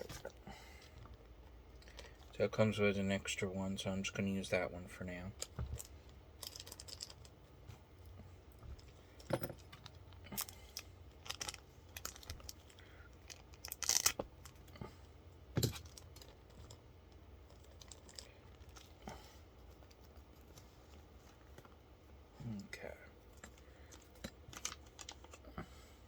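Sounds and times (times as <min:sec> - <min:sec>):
small metal parts clicking: 0:05.4 - 0:07.4, 0:08.8 - 0:14.8, 0:15.6 - 0:19.0, 0:23.4 - 0:25.4.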